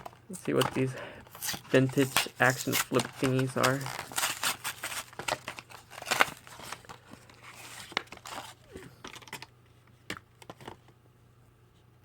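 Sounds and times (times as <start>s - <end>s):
plastic wrapper crackling and ripping: 0.0s - 9.5s.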